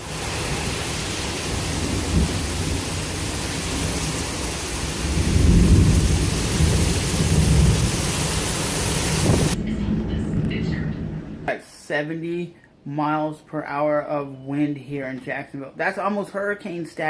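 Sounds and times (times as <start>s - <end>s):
heavy rain pouring: 0.0s - 11.5s
thunder rumbling: 0.0s - 11.5s.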